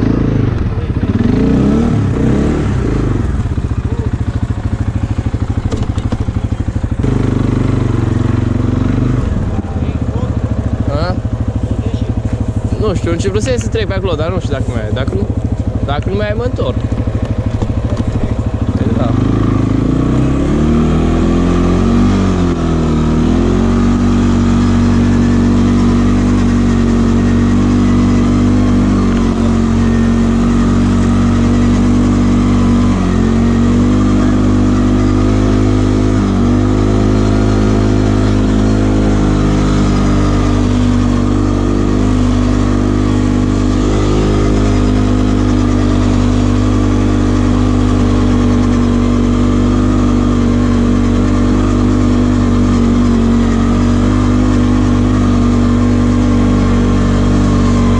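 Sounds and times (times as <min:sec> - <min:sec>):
atv engine under throttle: 0:00.0 - 0:57.9.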